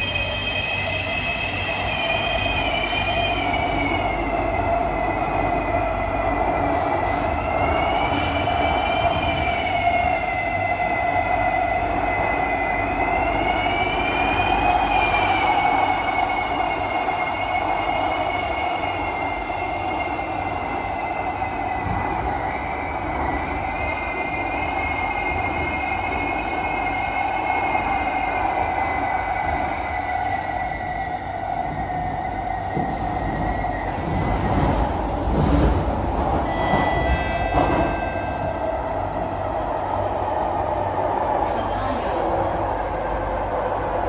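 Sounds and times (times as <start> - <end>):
metro train rumble: 0.0 - 44.0.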